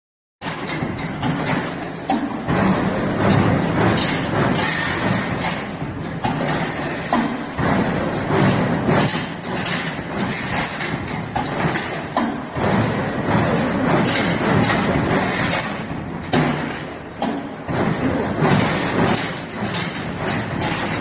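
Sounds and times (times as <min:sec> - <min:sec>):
machine running: 0:00.4 - 0:21.0
steel bar knocks and clanks: 0:00.4 - 0:21.0.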